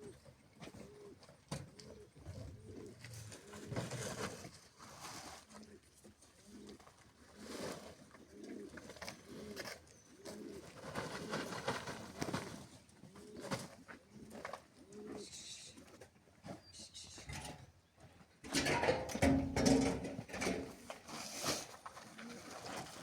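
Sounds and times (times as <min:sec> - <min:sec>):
pigeon cooing: 0:00.0 - 0:04.3, 0:06.4 - 0:17.6.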